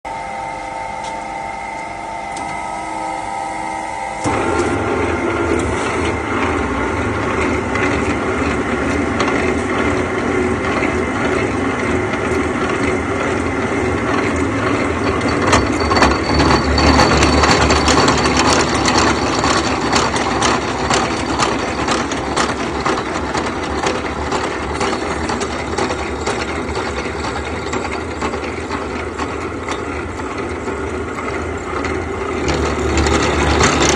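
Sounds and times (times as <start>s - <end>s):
milling machine running: 0.1s - 33.9s.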